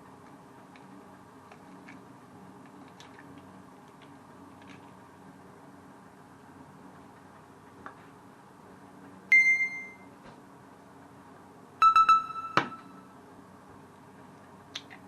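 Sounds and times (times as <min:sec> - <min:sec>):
low steady hum: 0:00.0 - 0:15.0
electronic beep tones: 0:09.3 - 0:10.1, 0:11.8 - 0:13.1.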